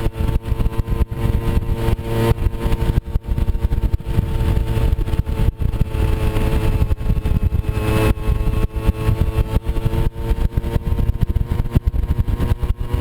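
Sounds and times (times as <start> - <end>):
moped scooter engine running: 0.0 - 13.0.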